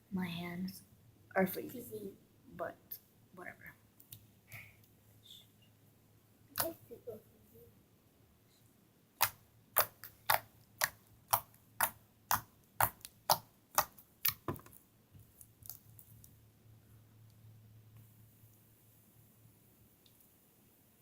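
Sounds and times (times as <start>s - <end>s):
slime air popping crackles: 9.2s - 14.7s.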